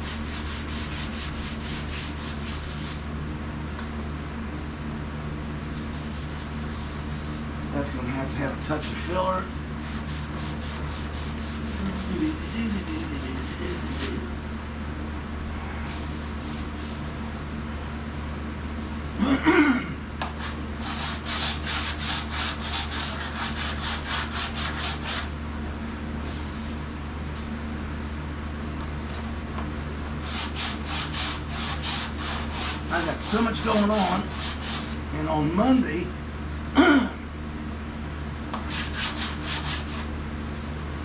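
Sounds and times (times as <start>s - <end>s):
hand sanding strokes: 0.0s - 3.0s, 5.6s - 7.4s, 9.8s - 14.3s, 15.9s - 17.4s, 20.4s - 25.3s, 26.2s - 26.8s, 30.2s - 35.0s, 38.7s - 40.8s.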